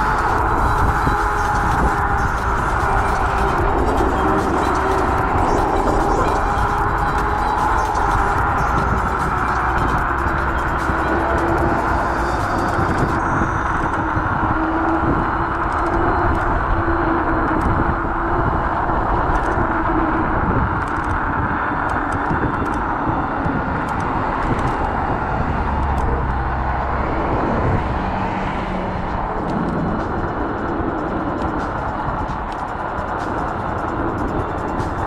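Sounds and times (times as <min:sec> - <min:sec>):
faint steady hum: 0:00.0 - 0:28.0
wind and road rush: 0:00.0 - 0:35.0.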